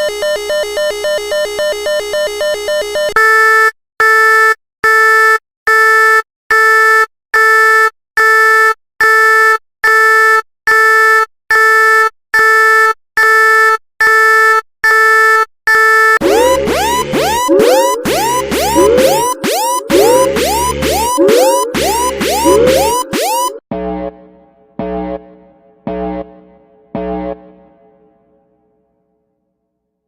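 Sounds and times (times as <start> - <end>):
buzzy electronic alarm beeps: 16.2 - 23.6.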